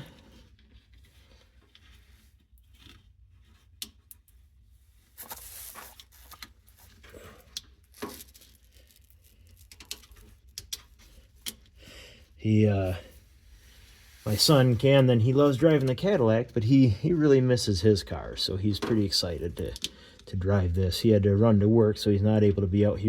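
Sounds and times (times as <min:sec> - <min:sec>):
crinkly plastic rustling: 0:05.0 - 0:11.4.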